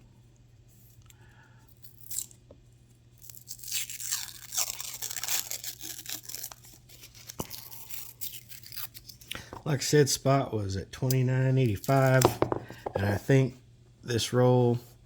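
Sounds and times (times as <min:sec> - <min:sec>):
wrapper crinkling and tearing: 0:03.2 - 0:09.4.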